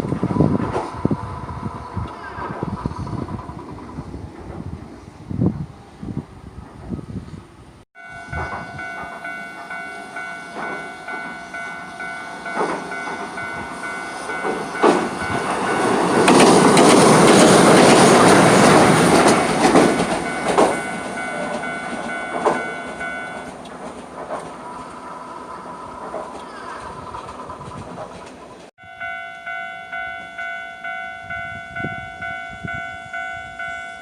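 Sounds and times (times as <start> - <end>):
tram wheels clacking on rail joints: 0.0 - 5.0, 8.0 - 34.0
level-crossing warning bell: 8.0 - 24.0, 28.8 - 34.0.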